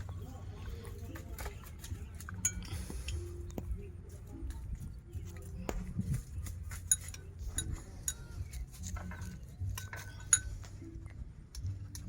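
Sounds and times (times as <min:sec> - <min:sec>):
utensils clinking against a dish: 0:00.0 - 0:03.4, 0:06.4 - 0:10.8.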